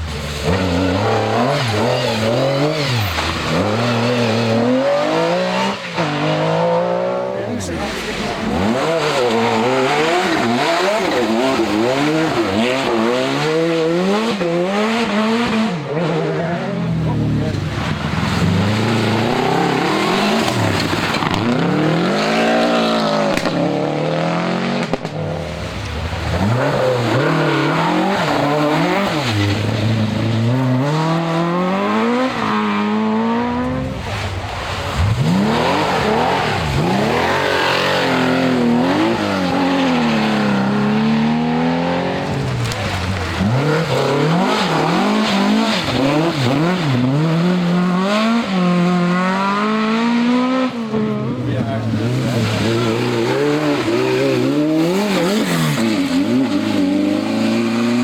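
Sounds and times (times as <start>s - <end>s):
rally car engines revving: 0.0s - 58.0s.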